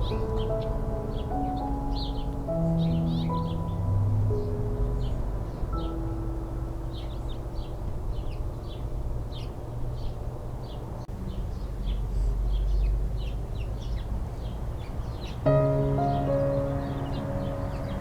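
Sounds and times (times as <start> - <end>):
small birds chirping: 0.0 - 18.0
wind rumble: 15.4 - 18.0.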